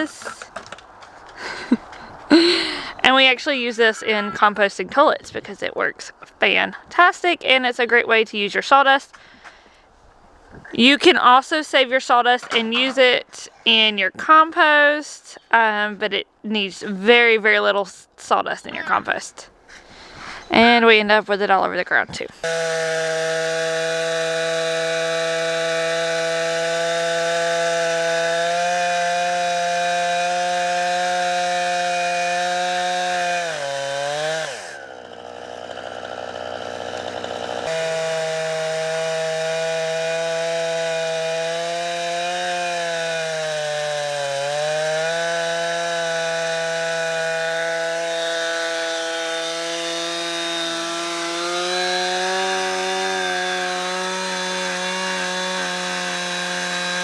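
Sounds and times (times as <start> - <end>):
chainsaw cutting through log: 1.4 - 2.9, 22.4 - 57.0.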